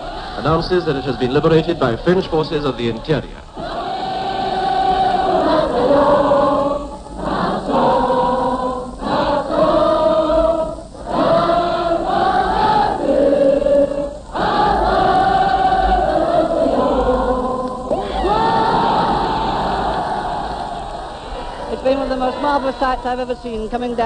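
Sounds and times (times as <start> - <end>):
choir singing: 0.0 - 24.0.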